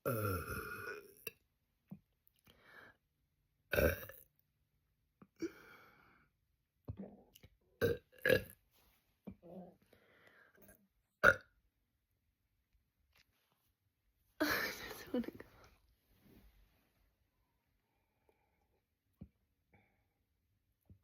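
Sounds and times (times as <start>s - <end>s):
person burping: 0.0s - 1.4s, 3.7s - 4.2s, 6.9s - 8.6s, 10.6s - 11.6s.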